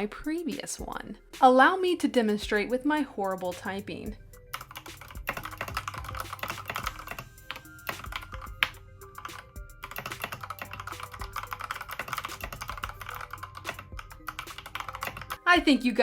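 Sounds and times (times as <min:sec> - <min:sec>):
background music: 0:00.0 - 0:16.0
mechanical keyboard typing: 0:04.5 - 0:15.4.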